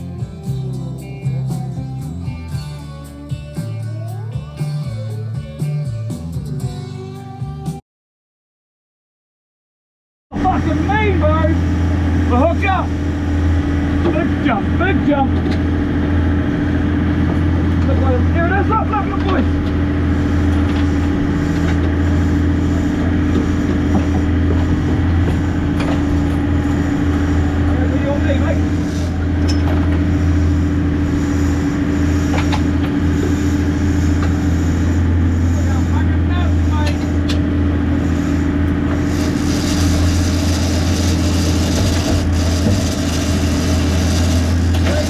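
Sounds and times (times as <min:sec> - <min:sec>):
boat engines droning: 0:10.3 - 0:45.0
steady hum: 0:10.4 - 0:45.0.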